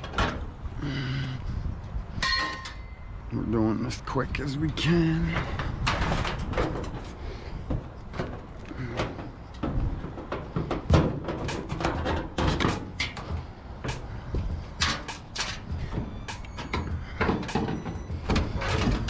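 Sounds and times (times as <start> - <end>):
scrap metal clanking: 5.3 - 19.0.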